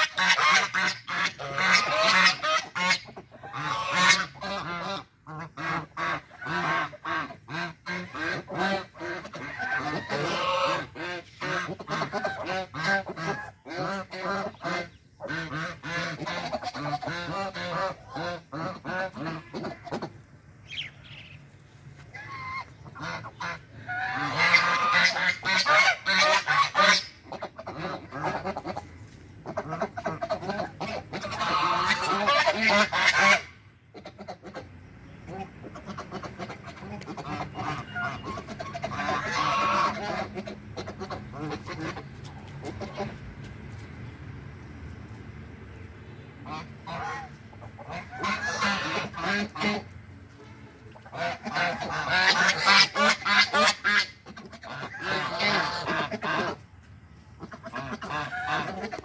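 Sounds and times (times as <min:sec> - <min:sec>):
geese hissing: 0:00.0 - 0:43.2, 0:46.4 - 0:59.0
geese honking: 0:00.0 - 0:43.2, 0:46.4 - 0:59.0.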